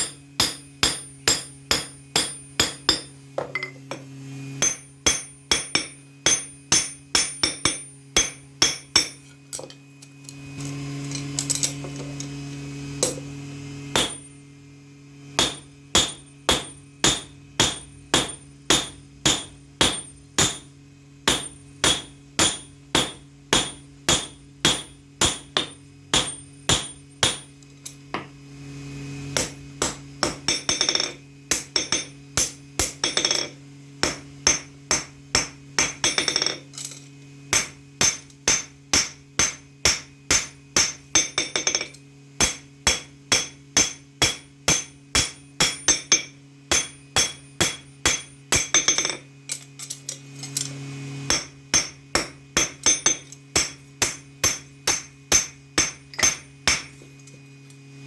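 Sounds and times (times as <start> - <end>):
steady low hum: 0.0 - 58.0.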